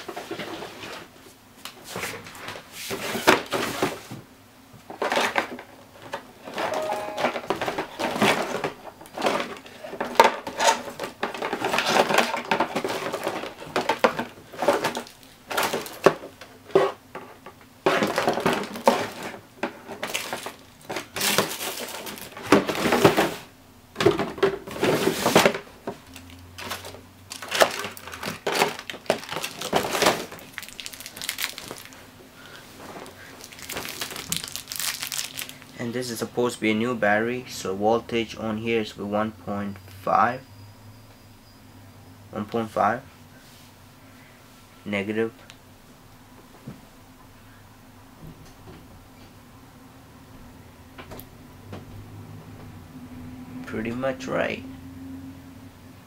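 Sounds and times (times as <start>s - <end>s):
hands rummaging small hard objects: 6.7s - 16.2s, 19.9s - 23.4s, 24.7s - 32.0s, 32.8s - 35.8s.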